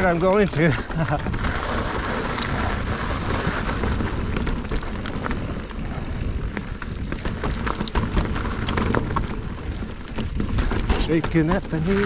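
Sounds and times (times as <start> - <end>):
bike rattling clicks: 0.0 - 12.0
steady low rumble: 3.7 - 9.2.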